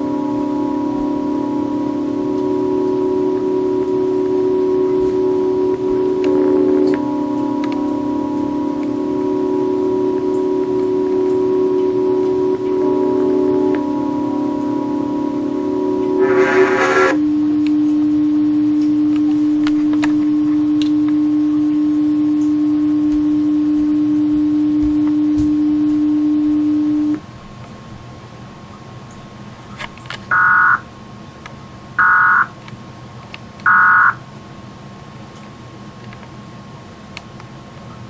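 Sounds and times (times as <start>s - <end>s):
alert tone chord: 0.0s - 27.2s
steady low alert tone: 0.0s - 27.2s, 33.7s - 34.2s
digital data tone bursts: 12.8s - 21.5s, 30.3s - 30.8s, 32.0s - 32.5s, 33.7s - 34.2s
hiss: 16.2s - 17.2s.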